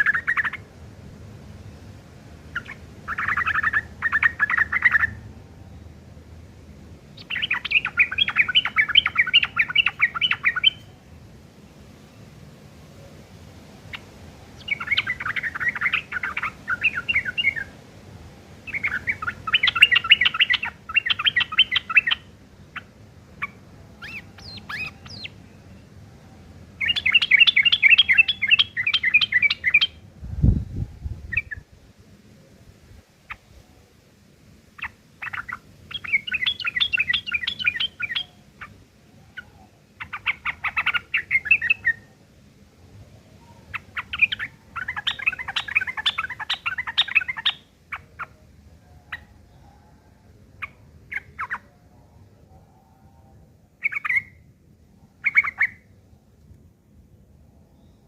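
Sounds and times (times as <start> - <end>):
bird chattering song: 0.0 - 0.7, 2.5 - 5.2, 7.2 - 11.0, 13.8 - 17.8, 18.6 - 25.9, 26.8 - 30.0, 31.2 - 31.6, 34.8 - 42.2, 43.3 - 54.5, 55.1 - 56.0.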